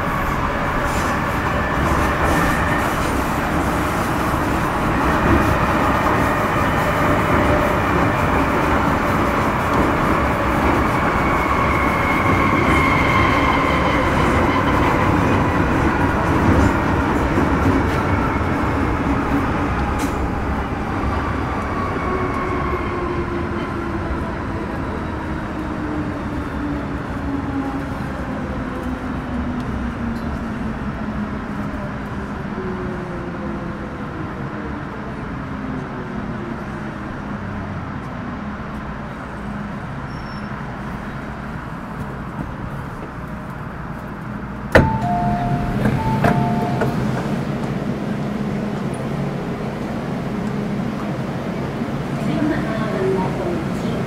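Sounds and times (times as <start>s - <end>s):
train wheels rumbling: 38.1s - 54.0s
electric train traction whine: 44.7s - 49.1s.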